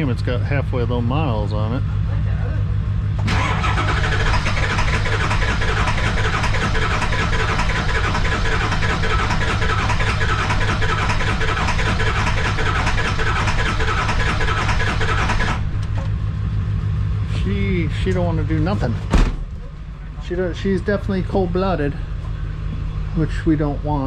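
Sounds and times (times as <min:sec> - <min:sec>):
diesel engine cranking: 0:03.1 - 0:24.0.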